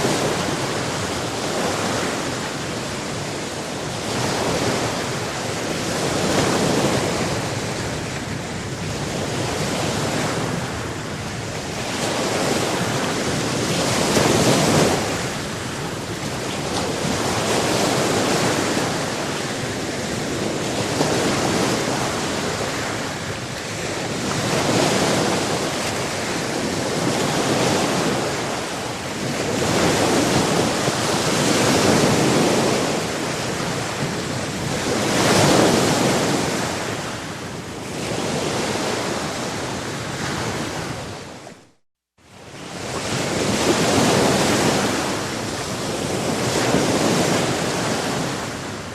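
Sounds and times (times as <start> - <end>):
wind on microphone: 0.0 - 41.7, 42.3 - 48.9
waves breaking on shore: 0.0 - 48.9.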